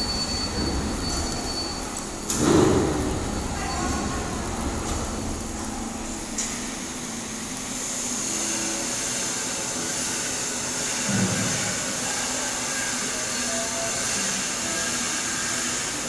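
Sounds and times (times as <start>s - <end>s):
welding arc crackling hiss: 0.0s - 16.0s.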